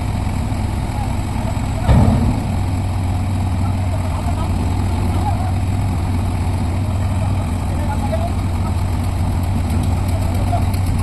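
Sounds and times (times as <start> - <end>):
diesel engine running: 0.0 - 11.0
loud heavy knock: 1.8 - 2.8.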